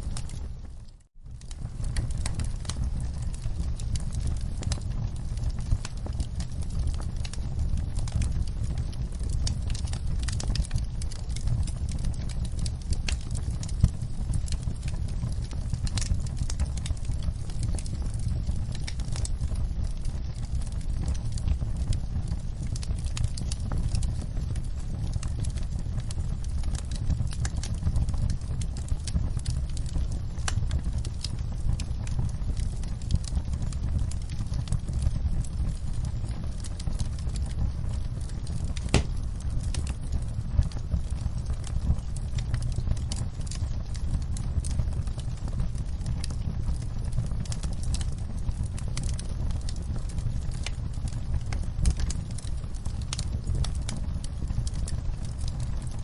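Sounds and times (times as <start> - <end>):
crackles and pops of burning logs: 0.0 - 56.0
low rumble of flames: 0.0 - 56.0
loud fire pop: 38.8 - 39.4.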